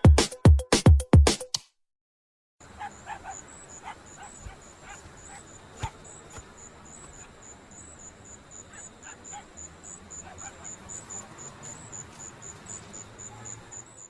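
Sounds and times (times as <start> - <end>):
cricket chirping: 2.6 - 14.0.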